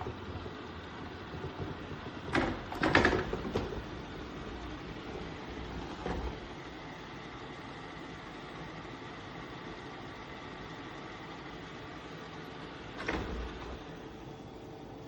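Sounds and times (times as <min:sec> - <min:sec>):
clattering knocks: 0:00.0 - 0:04.2.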